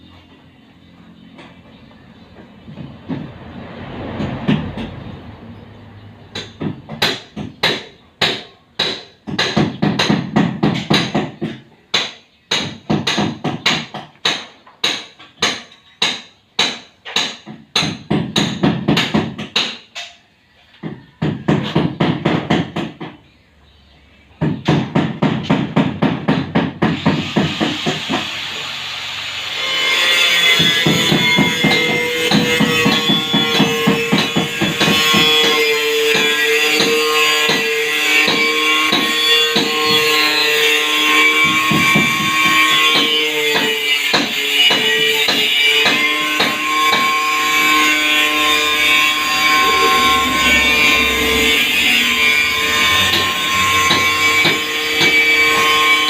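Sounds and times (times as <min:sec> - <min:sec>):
hammer blows ringing: 0:06.3 - 0:19.9, 0:29.6 - 0:56.0
steady rasping noise: 0:29.6 - 0:56.0.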